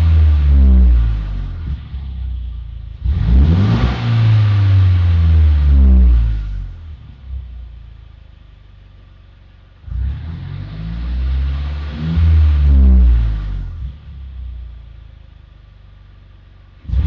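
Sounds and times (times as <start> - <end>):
car engine accelerating: 0.0 - 7.8, 9.7 - 15.0, 16.6 - 17.0.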